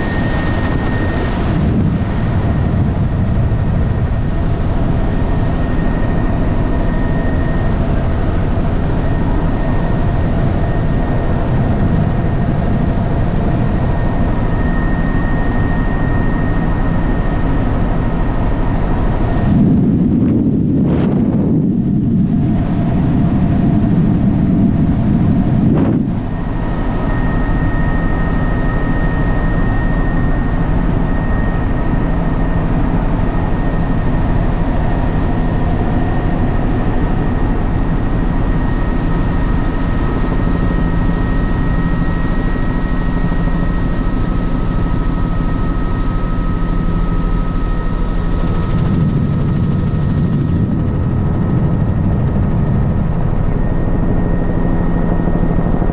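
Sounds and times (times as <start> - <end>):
helicopter engine and rotor drone: 0.0 - 55.9
high whine: 0.0 - 55.9.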